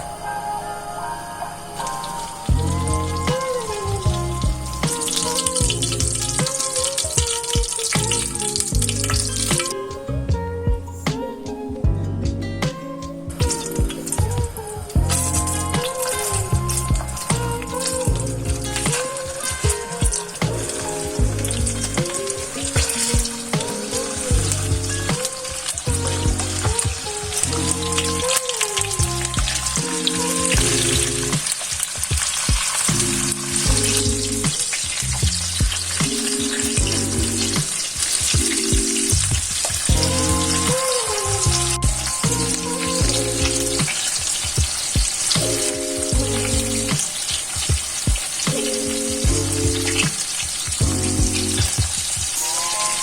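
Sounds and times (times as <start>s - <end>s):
background music: 0.0s - 53.0s
food sizzling in hot fat: 15.0s - 53.0s.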